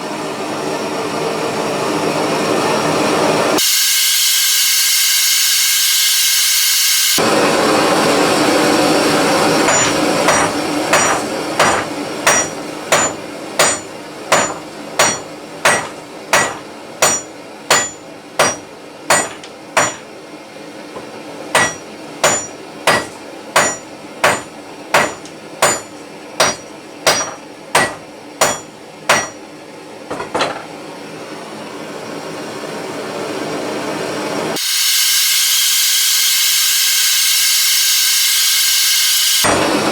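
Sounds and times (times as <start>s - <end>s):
torch hissing: 2.4s - 9.7s, 34.5s - 39.9s
blow lamp hissing: 3.4s - 9.7s, 34.4s - 39.8s
hammer striking hot metal: 9.6s - 20.1s, 21.5s - 29.4s.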